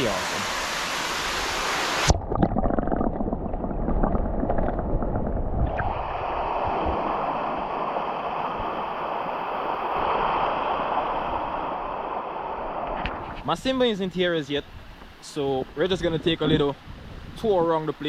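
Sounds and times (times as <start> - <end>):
low rumbling: 2.1 - 8.0.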